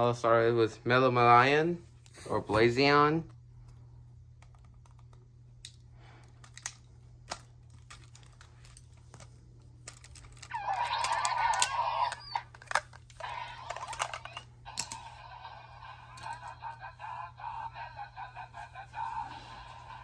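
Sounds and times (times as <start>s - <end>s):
toy speaker electronic sound: 10.5s - 12.6s, 13.2s - 20.0s.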